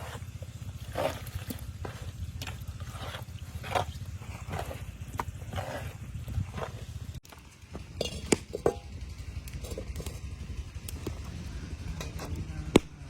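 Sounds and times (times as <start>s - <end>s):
steady low rumble: 0.0s - 13.0s
metal pots clinking: 7.9s - 9.0s, 9.6s - 10.3s, 12.0s - 12.4s.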